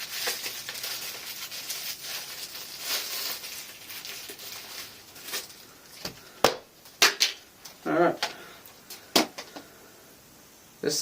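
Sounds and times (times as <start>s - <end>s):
packaging rustling and scraping: 0.0s - 6.2s.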